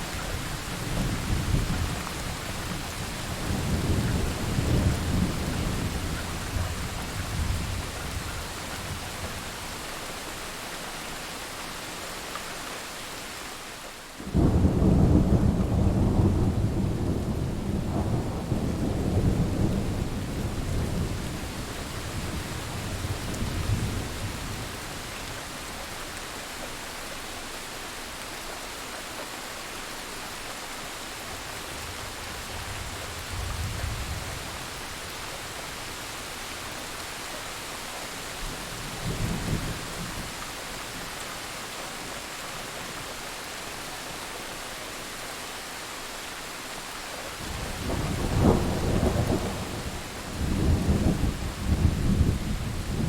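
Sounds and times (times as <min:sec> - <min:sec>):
steady rain: 0:00.0 - 0:53.0
rolling thunder: 0:14.2 - 0:24.7, 0:47.4 - 0:53.0
loud thunderclap: 0:47.4 - 0:53.0.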